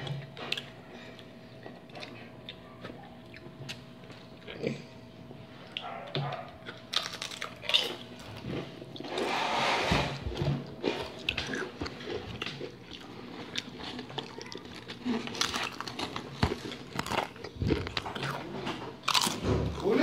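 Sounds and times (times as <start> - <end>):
crisps being crunched and chewed: 6.6 - 9.1, 10.7 - 20.0.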